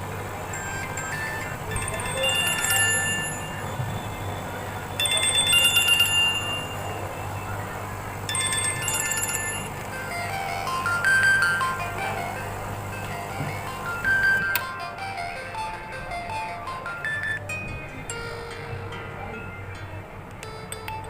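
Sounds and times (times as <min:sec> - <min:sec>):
phone ringtone: 0:00.1 - 0:21.0.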